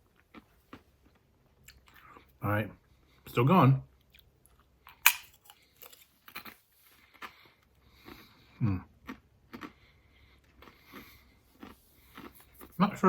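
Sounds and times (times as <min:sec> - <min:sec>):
chewing crunches: 0:00.0 - 0:02.4, 0:04.0 - 0:13.0
chip crunching: 0:04.2 - 0:08.3, 0:10.4 - 0:13.0.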